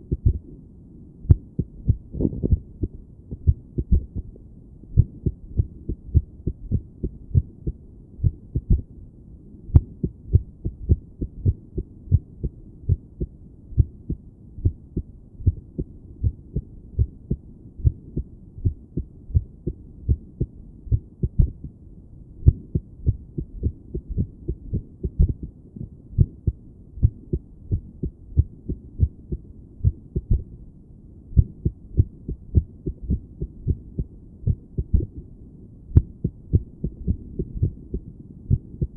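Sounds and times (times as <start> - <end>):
irregular heartbeat through stethoscope: 0.0 - 0.5, 1.3 - 8.9, 9.7 - 21.8, 22.4 - 30.6, 31.4 - 35.3, 35.9 - 38.9.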